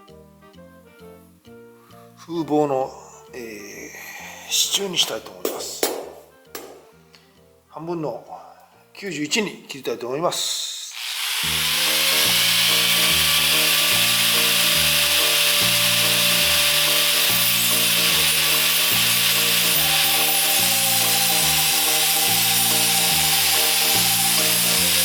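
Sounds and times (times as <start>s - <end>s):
power tool cutting steel: 10.9s - 25.0s.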